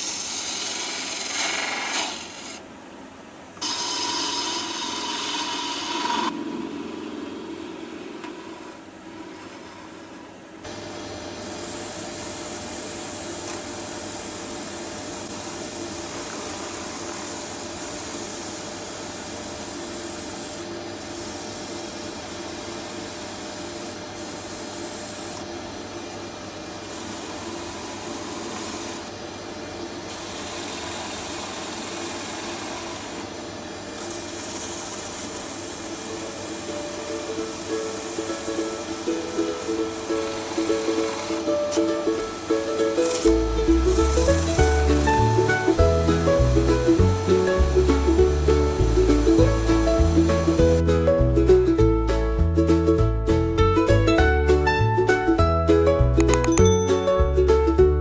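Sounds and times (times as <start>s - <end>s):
tools scraping spinning wood: 0.0s - 2.6s, 11.4s - 25.4s, 34.0s - 50.8s
wood lathe motor hum: 0.0s - 2.6s, 3.6s - 10.8s, 11.4s - 25.5s, 26.8s - 29.2s, 30.0s - 50.9s.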